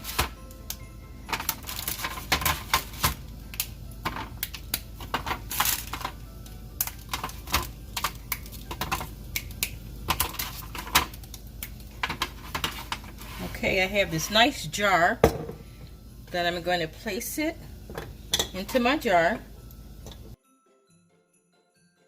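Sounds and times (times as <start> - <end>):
chocolate bark snapping: 8.0 - 8.6, 9.3 - 10.4.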